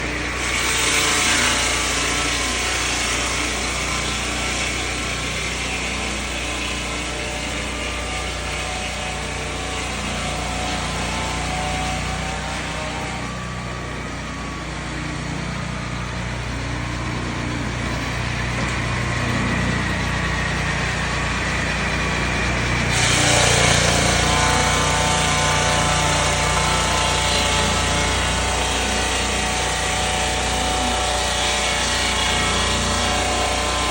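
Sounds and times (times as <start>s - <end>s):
saw cutting timber hiss: 0.0s - 33.9s
sawmill engine running: 0.0s - 33.9s.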